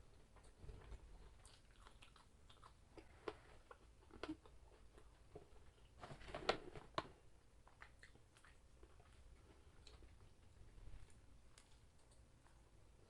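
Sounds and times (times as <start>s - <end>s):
person chewing: 0.1s - 6.0s, 7.6s - 10.4s.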